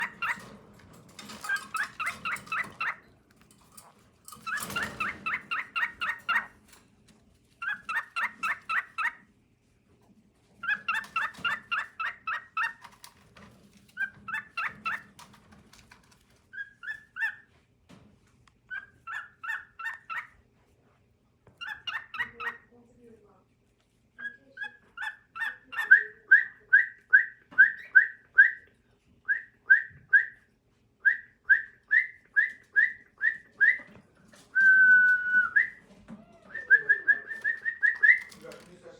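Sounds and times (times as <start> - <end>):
cockatiel chirping song: 0.0 - 0.4, 1.3 - 3.1, 4.4 - 6.6, 7.6 - 9.2, 10.6 - 13.0, 14.0 - 15.3, 16.5 - 17.5, 18.7 - 20.4, 21.6 - 22.7, 24.2 - 30.4, 31.0 - 34.5, 35.1 - 38.4.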